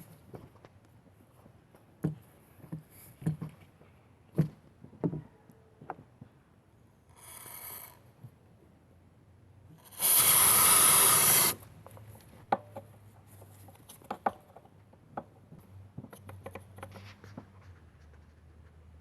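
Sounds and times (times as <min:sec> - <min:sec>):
aerosol can spraying: 0:10.1 - 0:11.6
parts clicking and knocking: 0:11.8 - 0:17.6.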